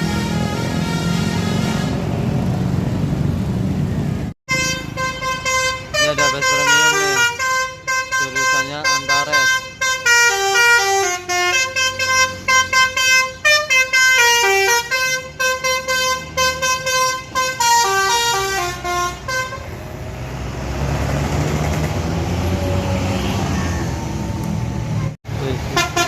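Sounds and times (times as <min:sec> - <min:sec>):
musical bus horn playing tune: 0:00.0 - 0:02.4, 0:04.5 - 0:19.8, 0:25.7 - 0:26.0
bus engine noise: 0:00.0 - 0:26.0.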